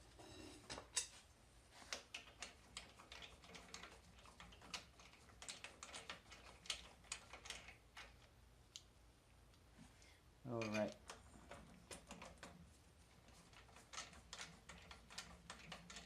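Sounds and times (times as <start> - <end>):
hand tools clicking on metal: 10.6 - 12.6.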